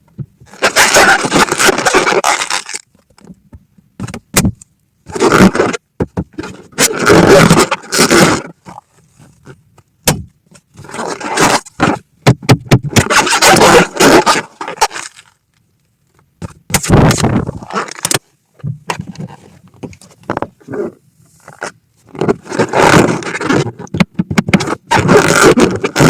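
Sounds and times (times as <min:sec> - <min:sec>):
rubbing balloons: 0:00.5 - 0:02.8, 0:20.6 - 0:26.0.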